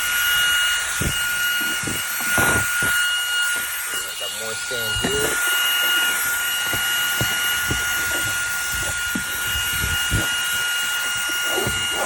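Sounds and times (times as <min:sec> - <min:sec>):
handheld vacuum whining: 0:00.0 - 0:12.0
nozzle knocking on carpet: 0:04.9 - 0:12.0.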